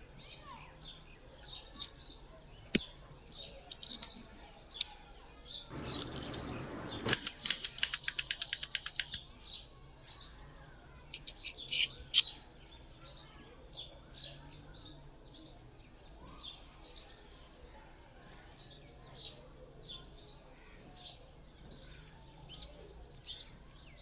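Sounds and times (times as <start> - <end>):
small birds chirping: 0.0 - 24.0.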